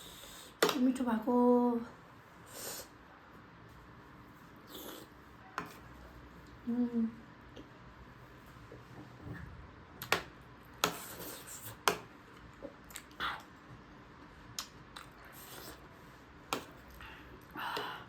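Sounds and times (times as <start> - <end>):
chewing and wet mouth noises: 11.0 - 13.6, 14.5 - 16.0.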